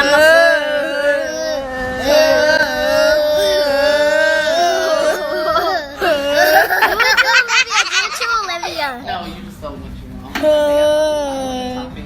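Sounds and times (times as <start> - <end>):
high voice wailing: 0.0 - 6.9.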